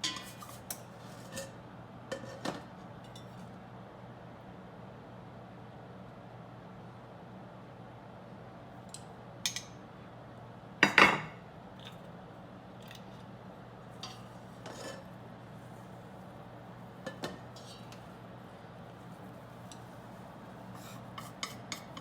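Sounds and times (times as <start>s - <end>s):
utensils and dishes clinking: 0.0s - 3.4s.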